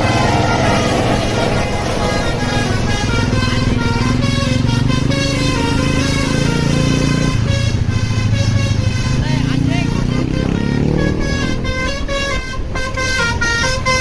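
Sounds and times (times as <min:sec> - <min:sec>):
bus engine running: 0:00.0 - 0:14.0
multi-tone air horn tune: 0:00.0 - 0:14.0.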